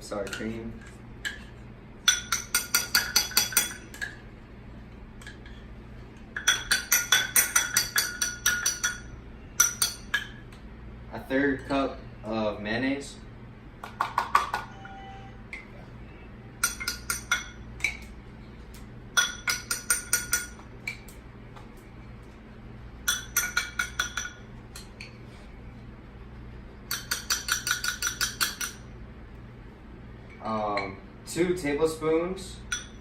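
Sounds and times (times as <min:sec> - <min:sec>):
utensil clinking against bowl: 0:00.0 - 0:04.2, 0:06.4 - 0:10.4, 0:16.6 - 0:18.1, 0:19.1 - 0:21.2, 0:23.0 - 0:25.2, 0:26.8 - 0:28.8, 0:32.6 - 0:33.0.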